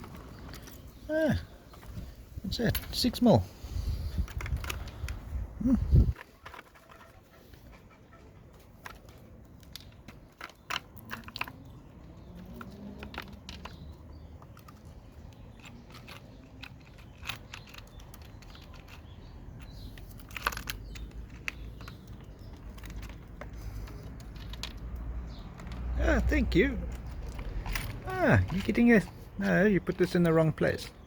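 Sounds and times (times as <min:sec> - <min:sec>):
metal tools rattling in toolbox: 0:00.0 - 0:03.5, 0:09.8 - 0:31.0.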